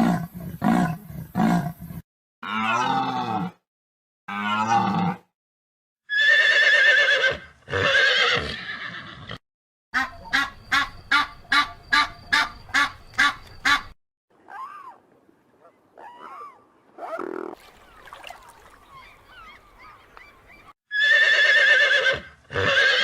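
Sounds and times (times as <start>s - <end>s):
horse neighing: 6.1s - 9.4s, 20.9s - 23.0s
short evenly spaced calls: 10.0s - 14.0s.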